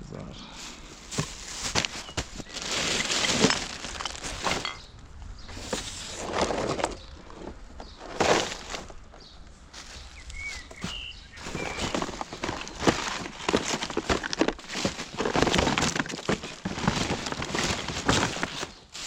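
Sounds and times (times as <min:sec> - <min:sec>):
rubbish rustling and clattering: 0:00.6 - 0:19.0
bird chirping: 0:06.8 - 0:13.3.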